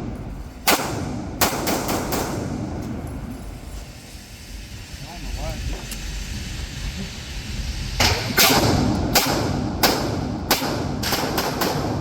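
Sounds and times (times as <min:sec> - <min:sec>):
sharp gunshots: 0:00.6 - 0:02.8, 0:08.0 - 0:12.0.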